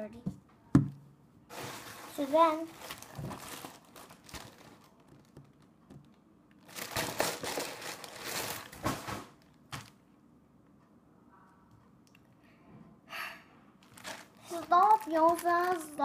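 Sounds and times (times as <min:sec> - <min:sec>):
plastic packaging crinkling: 0:01.5 - 0:10.0, 0:13.8 - 0:16.0.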